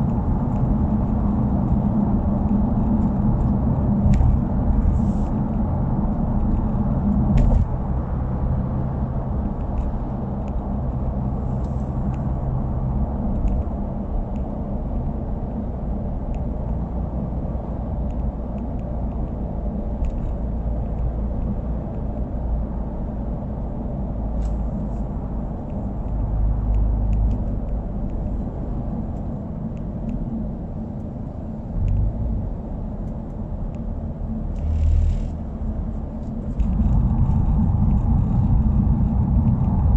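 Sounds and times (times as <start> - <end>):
car engine rumbling: 0.0 - 39.9.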